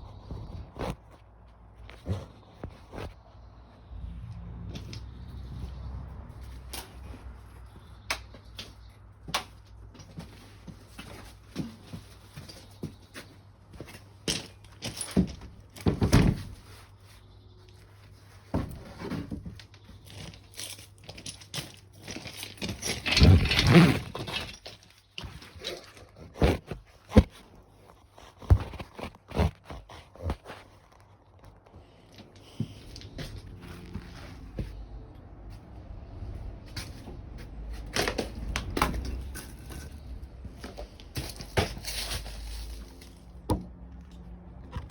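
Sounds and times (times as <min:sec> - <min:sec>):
rustle and scrape: 0:09.6 - 0:44.9
handling knocks and clicks: 0:36.6 - 0:44.9.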